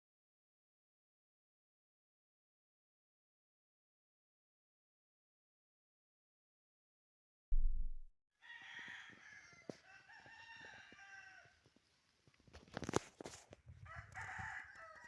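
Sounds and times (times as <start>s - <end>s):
low thump: 7.5s - 8.1s
rooster crowing: 8.4s - 11.6s, 13.8s - 15.0s.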